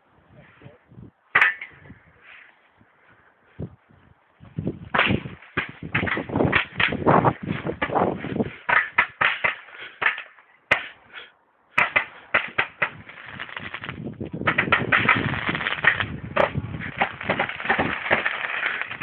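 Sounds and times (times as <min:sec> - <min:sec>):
fireworks bangs and crackles: 0:04.7 - 0:10.3, 0:11.8 - 0:19.0.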